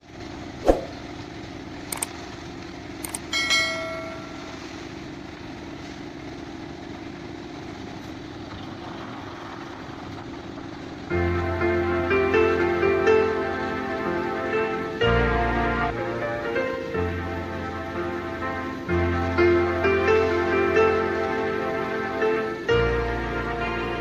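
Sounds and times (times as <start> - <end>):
machinery engine running: 0.0 - 24.0
ringing metal clang: 3.2 - 4.5.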